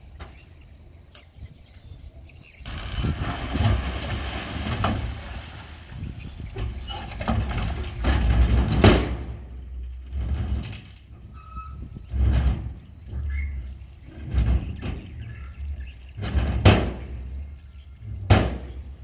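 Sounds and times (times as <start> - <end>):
bulldozer engine rumble: 0.0 - 19.0
rocks grinding and scraping: 2.6 - 13.4.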